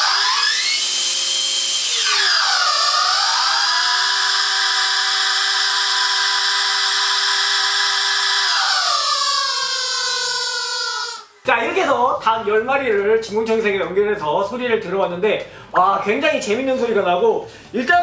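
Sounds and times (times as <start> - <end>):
shrill squealing squeaky toys: 8.2 - 11.3.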